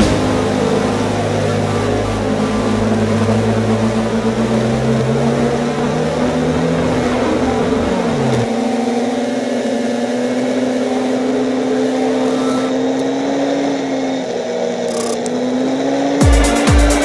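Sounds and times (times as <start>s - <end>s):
atv engine running: 0.0s - 17.0s.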